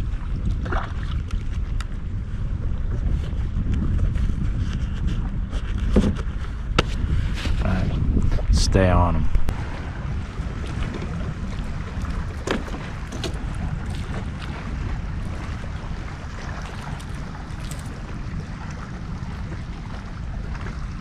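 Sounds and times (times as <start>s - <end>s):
water lapping at hull: 0.0s - 21.0s
wind buffeting microphone: 0.0s - 21.0s
light clicks and knocks: 12.4s - 14.1s.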